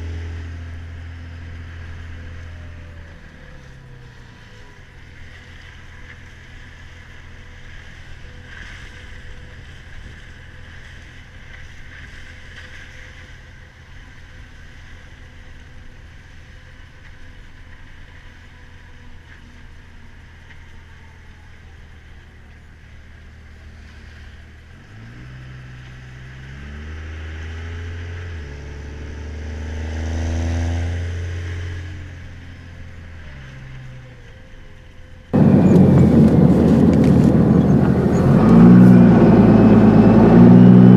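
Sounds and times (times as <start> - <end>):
diesel truck engine idling and revving: 22.6 - 33.7, 35.4 - 40.9.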